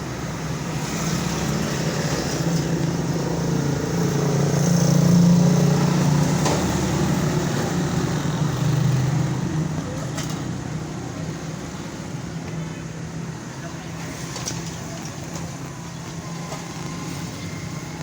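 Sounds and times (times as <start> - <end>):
vehicle engine hum: 0.0 - 18.0.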